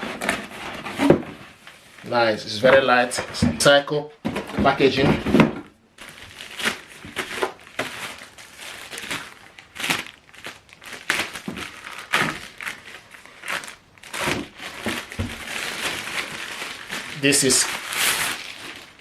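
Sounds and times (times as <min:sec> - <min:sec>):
paper packaging crinkling: 0:06.0 - 0:19.0.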